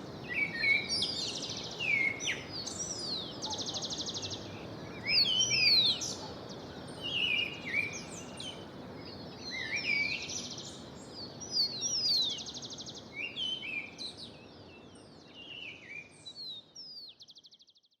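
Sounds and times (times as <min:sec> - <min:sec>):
low outdoor background noise: 0:00.0 - 0:17.9
songbirds singing: 0:00.0 - 0:17.9.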